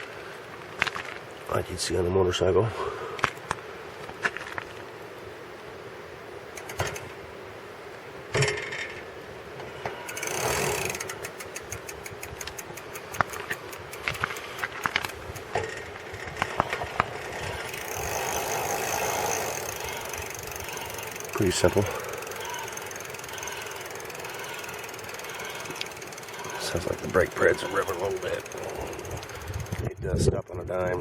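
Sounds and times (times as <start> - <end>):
bicycle chain and gears running: 6.5 - 7.2, 9.8 - 30.0
brake pads squealing: 9.6 - 29.8
rapid even clicking: 10.1 - 29.9.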